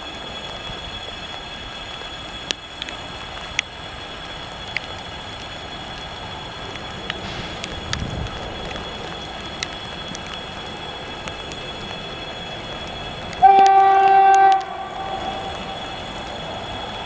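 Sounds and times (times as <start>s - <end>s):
passing train noise: 0.0s - 17.0s
locomotive horn blast: 13.4s - 15.8s.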